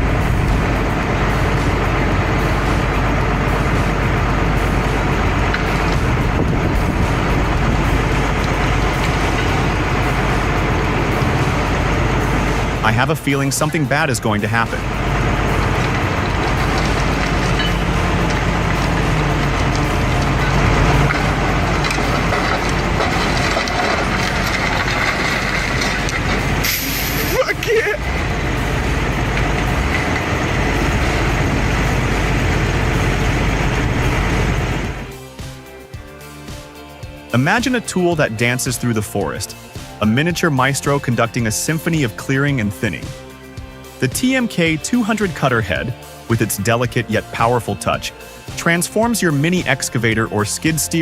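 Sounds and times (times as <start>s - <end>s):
heavy machine engine droning: 0.0s - 51.0s
wood cracking and splintering: 14.6s - 32.0s.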